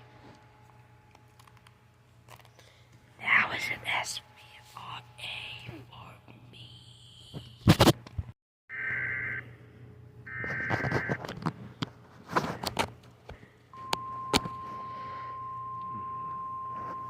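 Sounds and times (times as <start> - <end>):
steady warning alarm tone: 8.7 - 9.4, 10.3 - 11.2, 13.8 - 17.0.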